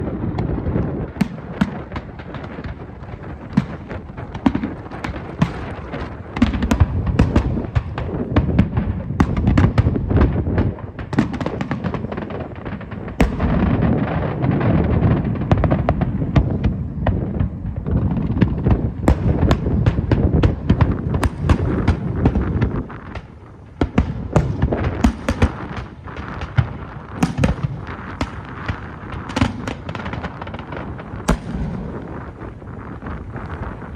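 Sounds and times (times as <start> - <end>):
fireworks bursts and crackling: 0.0 - 33.9
rumble of fireworks booms: 0.0 - 33.9.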